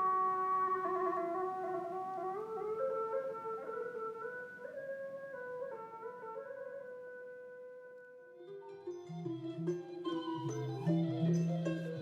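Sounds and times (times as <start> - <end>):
plucked instrumental tune: 8.4 - 12.0.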